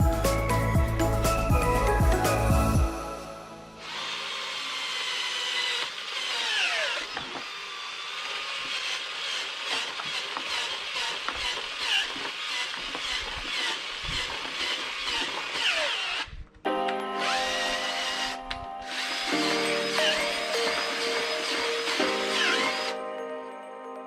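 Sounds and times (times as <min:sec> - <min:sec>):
cordless drill boring into soil: 0:03.8 - 0:16.4, 0:17.2 - 0:23.0.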